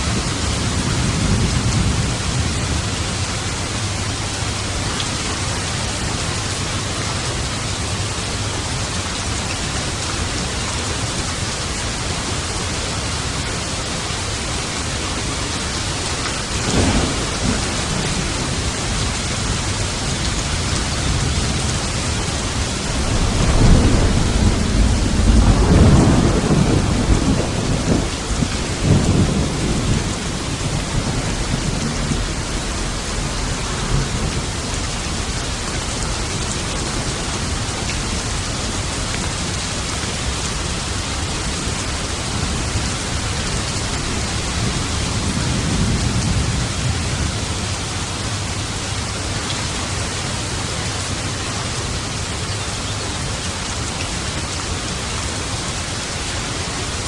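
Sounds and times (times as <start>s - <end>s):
low rolling thunder rumble: 0.0s - 6.4s, 15.6s - 49.3s
steady rain: 0.0s - 57.0s
thunder clap: 16.4s - 39.9s.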